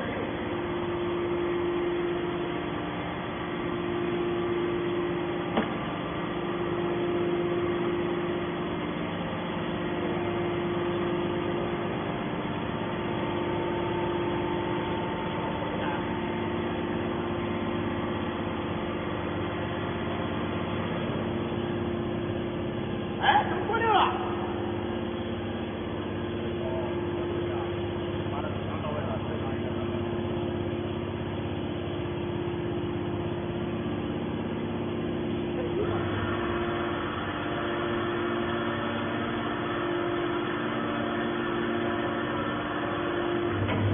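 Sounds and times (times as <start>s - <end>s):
hydraulic power unit humming: 0.0s - 43.9s
short knock: 5.5s - 5.8s.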